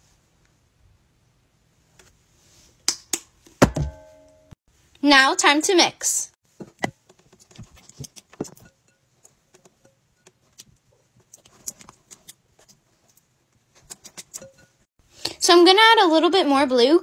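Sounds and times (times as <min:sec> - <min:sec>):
slime stirred in a cup: 0:07.1 - 0:14.8.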